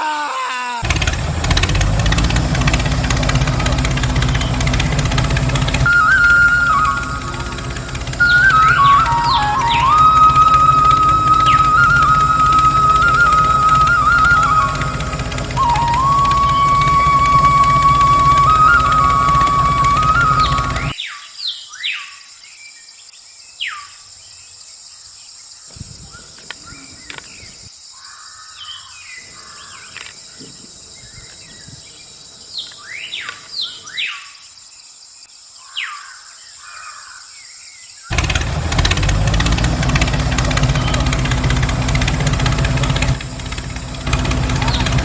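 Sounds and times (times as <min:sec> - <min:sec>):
birds chirping: 0:00.0 - 0:22.3, 0:23.0 - 0:45.0
loud steady rumbling: 0:00.8 - 0:20.9, 0:38.1 - 0:45.0.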